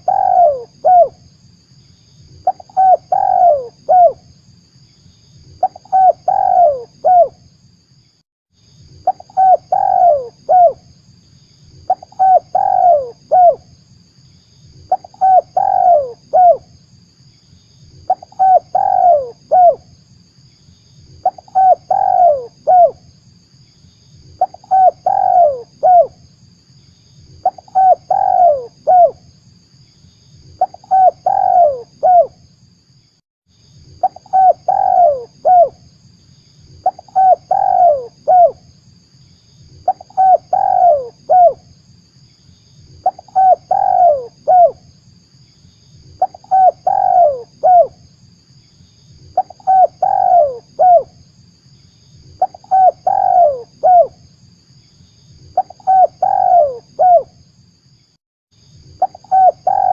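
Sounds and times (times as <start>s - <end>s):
dove cooing: 0.0s - 1.2s, 2.4s - 4.2s, 5.6s - 7.4s, 9.0s - 10.8s, 11.9s - 13.6s, 14.9s - 16.6s, 18.1s - 19.8s, 21.2s - 23.0s, 24.4s - 26.1s, 27.4s - 29.2s, 30.6s - 32.3s, 34.0s - 35.8s, 36.8s - 38.6s, 39.8s - 41.6s, 43.0s - 44.8s, 46.2s - 47.9s, 49.4s - 51.1s, 52.4s - 54.2s, 55.6s - 57.3s, 59.0s - 59.9s.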